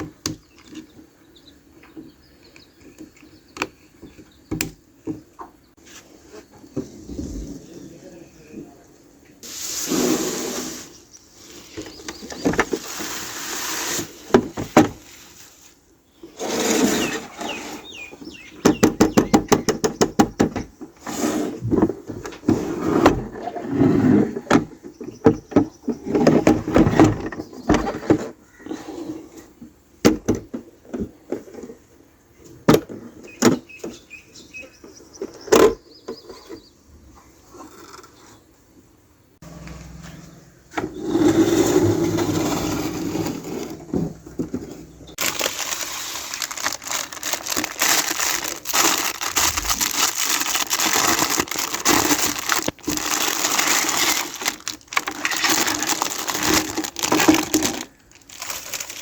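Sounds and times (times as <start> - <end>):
toy pieces and packaging handled: 45.2 - 59.0.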